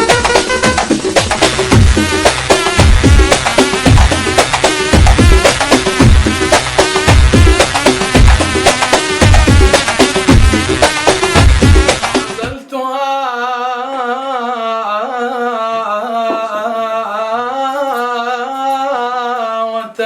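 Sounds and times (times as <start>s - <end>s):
drum-driven dance music: 0.0s - 12.6s.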